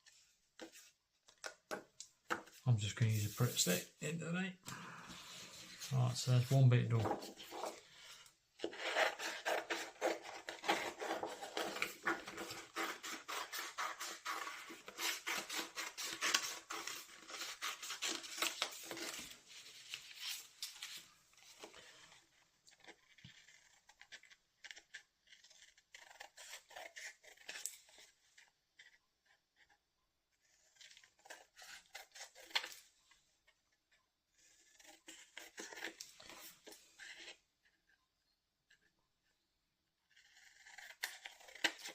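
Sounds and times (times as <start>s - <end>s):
paper rustle: 5.2s - 22.2s
scissors cutting cardstock: 8.6s - 19.3s, 40.2s - 41.9s.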